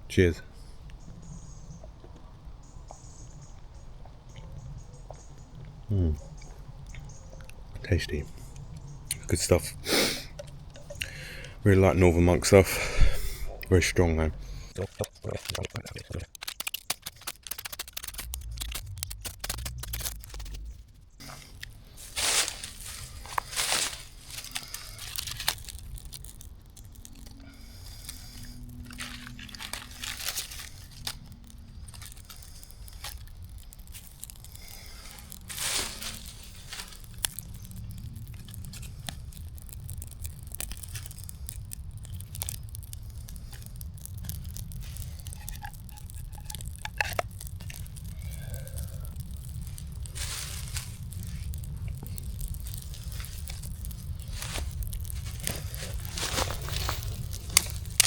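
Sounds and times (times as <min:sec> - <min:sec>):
steady low rumble: 0:00.0 - 0:16.4, 0:17.7 - 0:58.0
rustling and tearing: 0:14.3 - 0:58.0.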